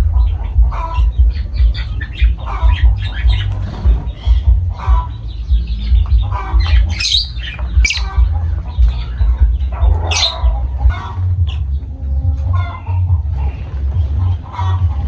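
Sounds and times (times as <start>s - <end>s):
steady low rumble: 0.0s - 11.0s
lovebirds chattering and squawking: 0.0s - 11.8s.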